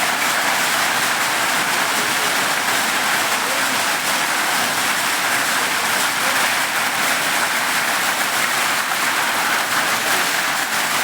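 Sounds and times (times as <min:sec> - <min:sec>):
heavy rain falling: 0:00.0 - 0:11.0.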